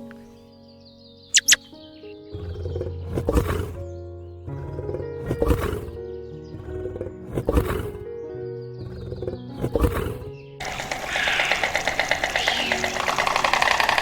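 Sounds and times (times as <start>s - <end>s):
background music: 0.0s - 11.4s
short high chirps: 1.4s - 1.7s
large animal roaring: 2.3s - 13.1s.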